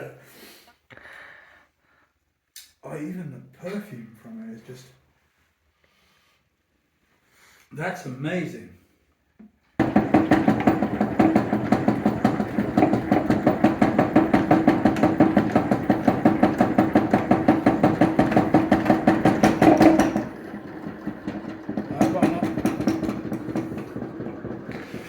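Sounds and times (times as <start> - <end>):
honey extractor motor hum: 9.8 - 25.0
rapid rhythmic knocking: 9.8 - 25.0.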